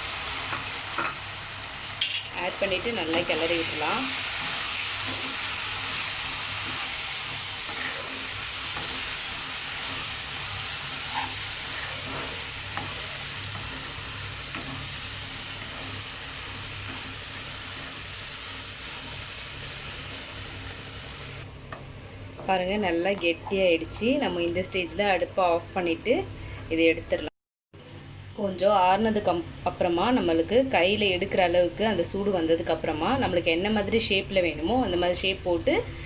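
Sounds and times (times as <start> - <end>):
food sizzling in a pan: 0.0 - 21.5.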